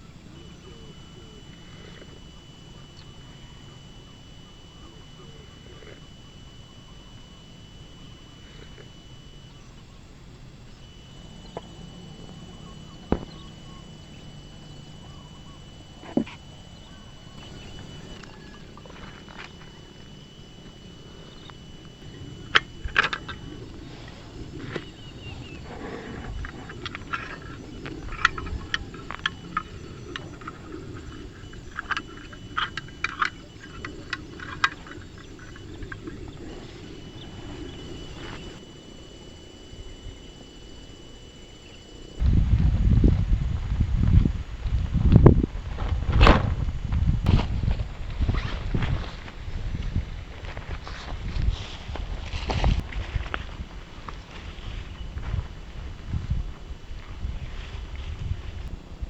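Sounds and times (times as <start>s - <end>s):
low background rumble: 0.0s - 59.0s
low wind rush: 42.1s - 59.0s.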